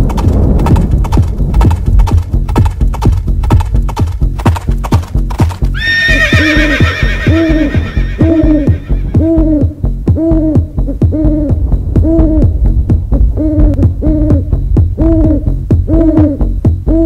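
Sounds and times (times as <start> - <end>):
fast clicking percussion: 0.0 - 5.8
steady bass: 0.0 - 5.8, 8.2 - 17.0
hoot-like electronic note: 6.0 - 12.5.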